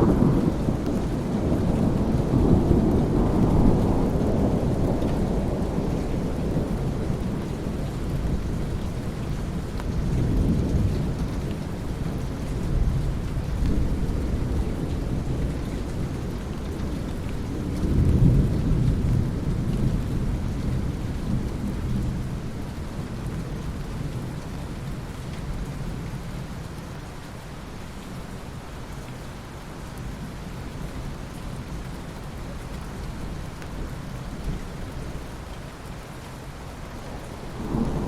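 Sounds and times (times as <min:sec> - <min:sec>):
rolling thunder rumble: 0:00.0 - 0:26.4, 0:37.2 - 0:38.0
steady rain: 0:00.0 - 0:38.0.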